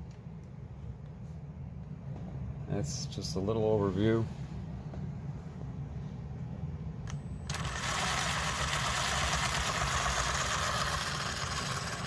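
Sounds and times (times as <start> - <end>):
electric motor and gears whirring: 7.1 - 12.0.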